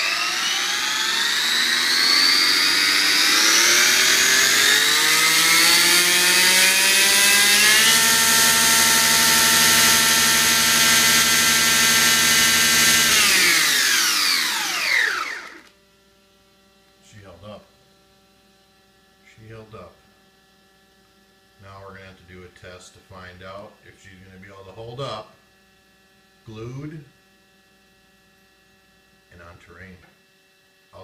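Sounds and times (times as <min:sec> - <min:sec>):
electric motor whine: 0:00.0 - 0:15.7.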